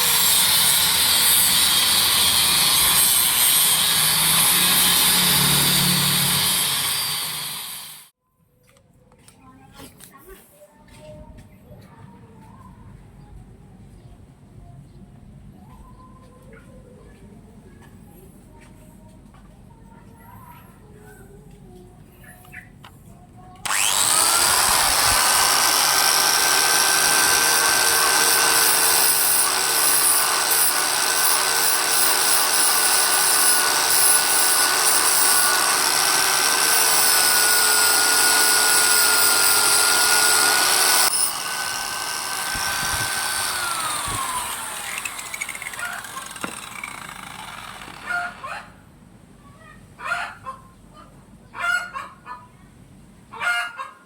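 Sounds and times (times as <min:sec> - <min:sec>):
electric power tool whining: 0:00.0 - 0:08.1, 0:23.6 - 0:48.4.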